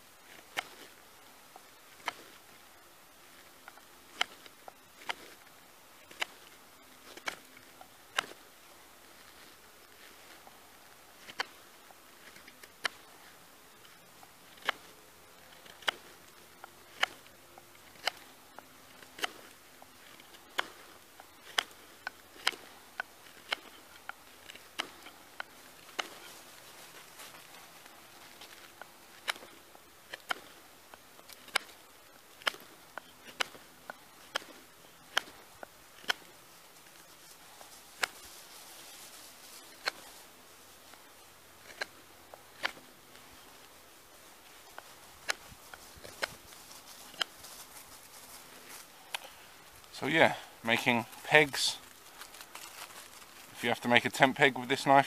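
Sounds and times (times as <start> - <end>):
knife carving wood: 0.2 - 2.6, 3.2 - 47.4, 48.4 - 49.5
faint hiss: 35.3 - 41.5, 43.0 - 55.0.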